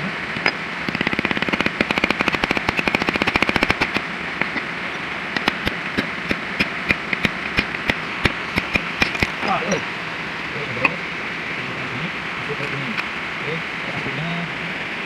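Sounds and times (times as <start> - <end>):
rapid sharp taps: 0.9 - 4.6, 5.3 - 9.4.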